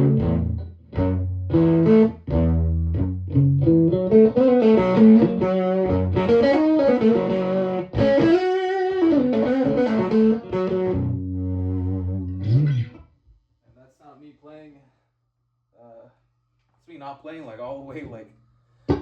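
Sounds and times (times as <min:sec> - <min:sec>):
electric guitar lead line: 0:00.0 - 0:13.0.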